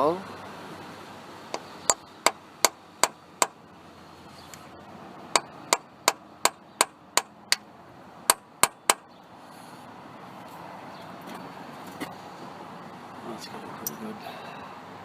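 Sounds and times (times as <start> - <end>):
hammer tapping centre punch: 8.3 - 9.0.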